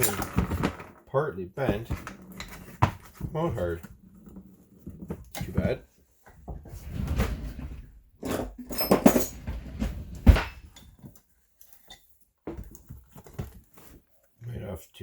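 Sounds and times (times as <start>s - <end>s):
metal tools rustling and clattering: 0.0s - 1.0s, 8.2s - 14.0s.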